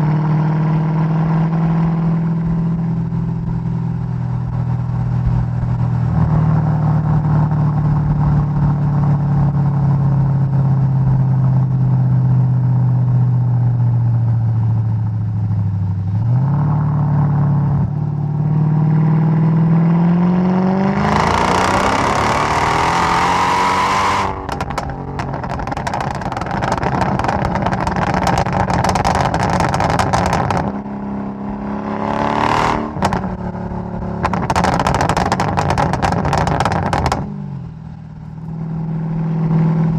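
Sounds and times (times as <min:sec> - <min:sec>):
car engine accelerating: 0:00.0 - 0:39.9
exhaust crackles and pops: 0:01.2 - 0:09.5, 0:21.0 - 0:31.1, 0:32.7 - 0:39.9.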